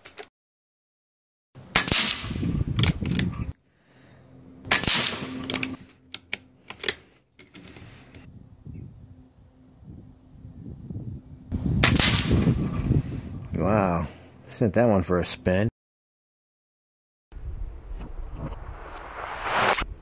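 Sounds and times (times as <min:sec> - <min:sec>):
air rifle shots: 0:01.7 - 0:02.6, 0:04.6 - 0:05.8, 0:11.8 - 0:12.6
wind rumble on microphone: 0:02.2 - 0:03.6, 0:08.2 - 0:13.8.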